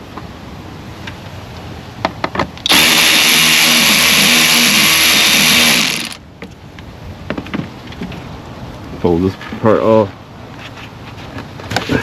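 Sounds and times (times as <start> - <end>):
handheld power tool running: 2.7 - 6.2.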